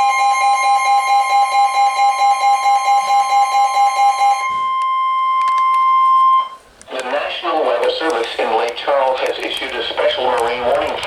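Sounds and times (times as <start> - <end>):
two-tone alarm pulsing: 0.0 - 6.6.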